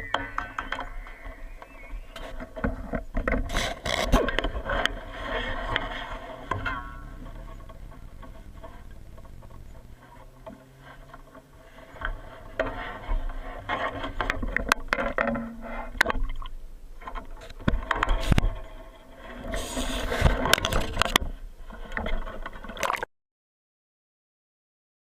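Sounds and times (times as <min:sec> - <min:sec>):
scraping: 0:00.0 - 0:22.8
clicks and knocks: 0:00.0 - 0:23.0
low rumble: 0:04.3 - 0:21.8.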